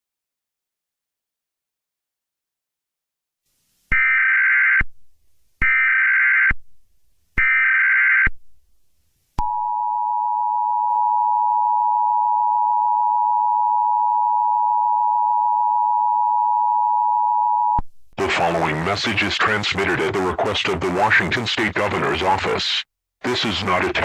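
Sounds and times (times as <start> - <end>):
harsh two-tone alarm: 3.9 - 4.9, 5.6 - 6.6, 7.4 - 8.3.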